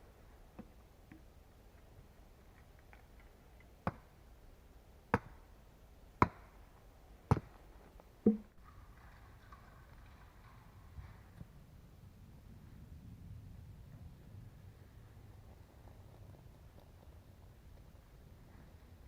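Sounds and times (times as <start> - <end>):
tool chopping wood: 5.1 - 5.4, 6.2 - 6.5, 7.3 - 7.6.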